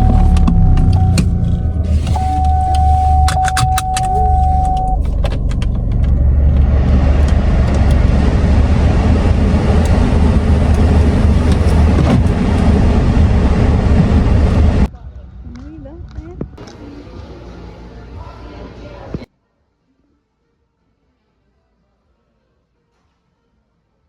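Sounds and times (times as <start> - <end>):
car engine running: 0.0 - 14.9
steady electronic tone: 0.0 - 14.9
road and wind noise: 0.0 - 17.2.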